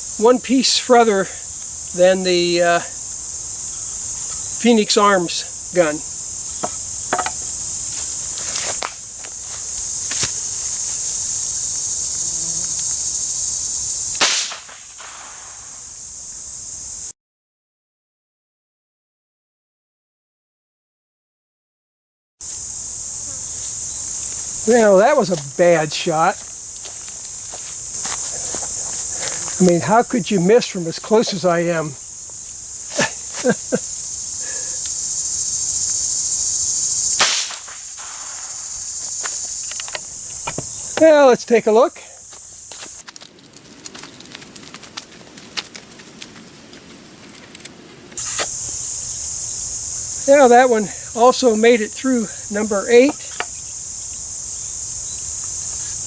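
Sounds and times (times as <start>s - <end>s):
insects buzzing: 0.0s - 17.2s, 22.4s - 56.0s
handgun shot: 14.2s - 15.6s, 37.2s - 38.4s
sharp click: 37.2s - 38.2s.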